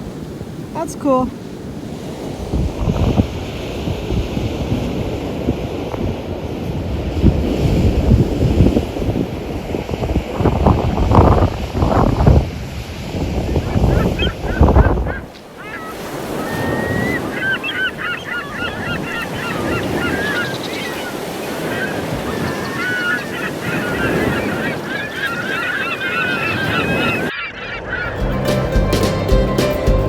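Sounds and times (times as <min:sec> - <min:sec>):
wind on microphone: 0:00.0 - 0:28.8
surf: 0:00.0 - 0:30.0
flock of birds calling: 0:13.5 - 0:30.0.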